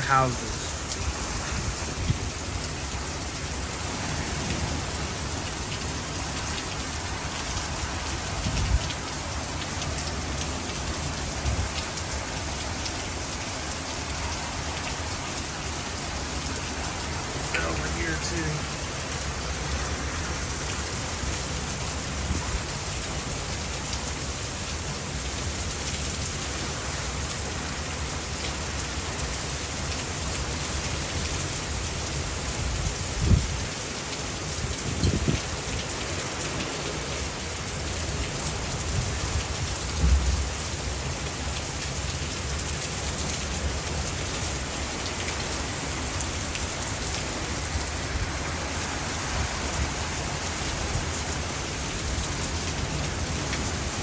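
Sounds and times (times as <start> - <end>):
gusty wind: 0.0 - 9.5, 32.3 - 33.8, 34.6 - 37.4
heavy rain pouring: 0.0 - 54.0
low thunder rumbles: 39.0 - 41.1.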